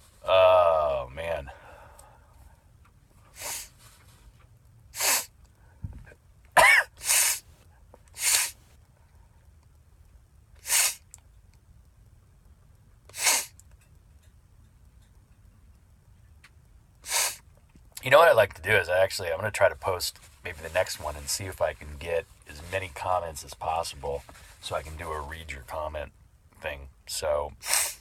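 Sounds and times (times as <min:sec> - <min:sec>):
man sneezing: 0:05.0 - 0:05.3, 0:06.6 - 0:07.4, 0:08.2 - 0:08.6, 0:10.6 - 0:11.0, 0:13.1 - 0:13.5, 0:27.6 - 0:28.0.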